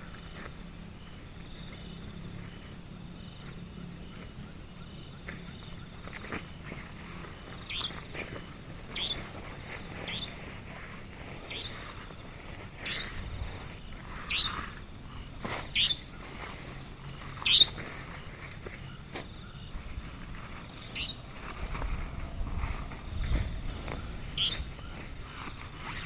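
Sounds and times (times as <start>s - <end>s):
bird chirping: 7.4s - 8.1s, 8.9s - 12.1s, 12.8s - 16.6s, 17.2s - 19.8s, 20.8s - 21.3s, 23.3s - 26.0s.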